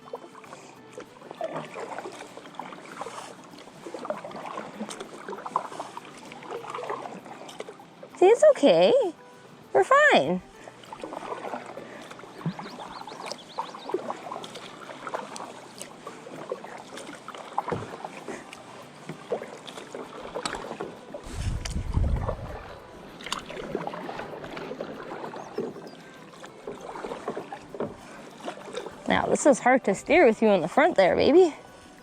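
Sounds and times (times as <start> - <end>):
paddle splashing in water: 0.0 - 31.9
low rumble: 21.3 - 22.9.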